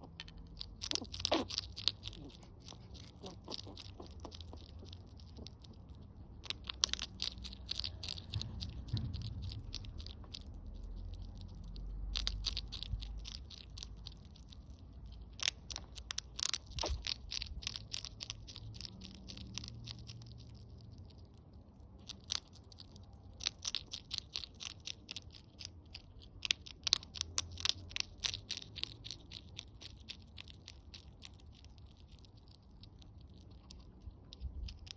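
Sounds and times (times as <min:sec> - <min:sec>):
hedgehog crunching food: 0:00.0 - 0:34.9.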